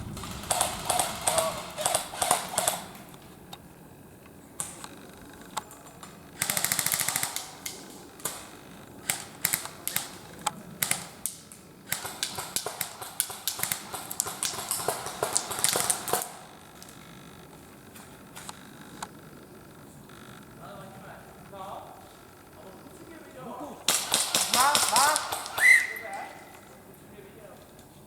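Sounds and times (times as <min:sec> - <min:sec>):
airsoft guns firing: 0:00.0 - 0:03.2, 0:04.6 - 0:05.0, 0:06.0 - 0:17.0, 0:23.8 - 0:26.6.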